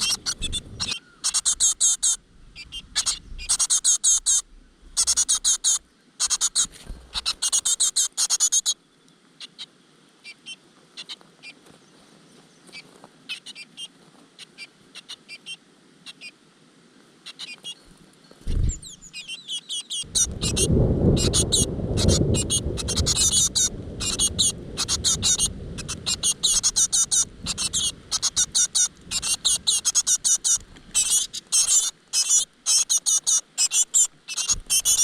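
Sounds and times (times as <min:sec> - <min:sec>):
loud low rumbling: 0:00.0 - 0:00.9, 0:20.1 - 0:30.3
nestlings chirping: 0:00.0 - 0:08.8, 0:17.3 - 0:35.0.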